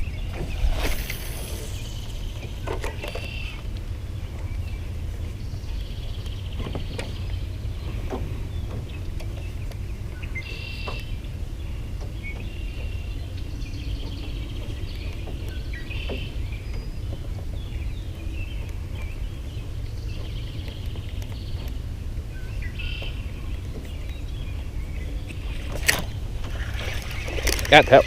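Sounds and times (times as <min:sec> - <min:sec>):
low rumble: 0:00.0 - 0:02.8
small birds chirping: 0:00.0 - 0:28.0.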